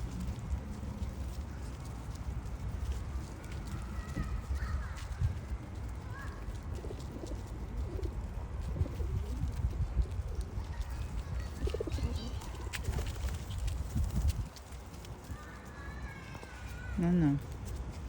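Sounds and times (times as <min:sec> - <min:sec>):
pigeons cooing: 0:06.7 - 0:13.5.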